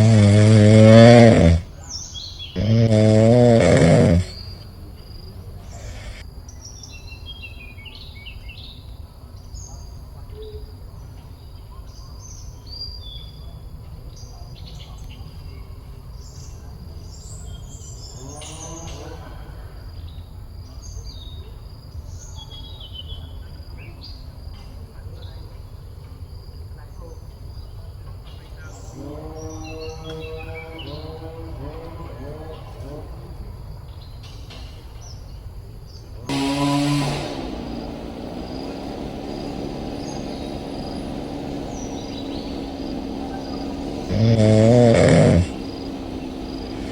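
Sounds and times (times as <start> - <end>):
birds chirping: 0.0 - 9.9, 35.0 - 46.9
low outdoor rumble: 36.6 - 46.9.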